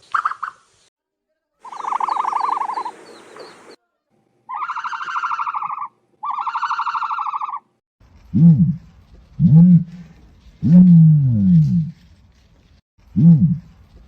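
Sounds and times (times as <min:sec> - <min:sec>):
ostrich pulsing calls: 0:01.6 - 0:03.8, 0:04.5 - 0:07.7
small birds chirping: 0:01.6 - 0:03.9.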